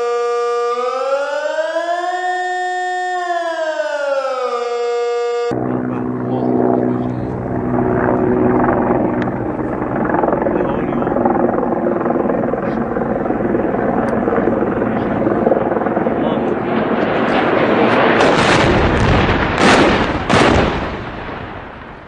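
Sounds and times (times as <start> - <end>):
faint steady tones: 2.0 - 16.6.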